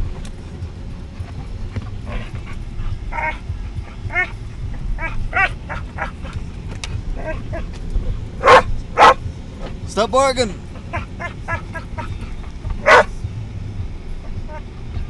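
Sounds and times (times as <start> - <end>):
car rumble: 0.0 - 15.0
puppy whining and yipping: 2.1 - 9.2, 10.8 - 13.2.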